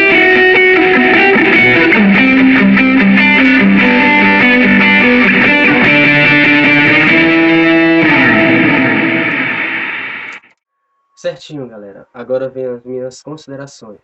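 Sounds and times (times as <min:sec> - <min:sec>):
electric guitar melody: 0:00.0 - 0:10.6.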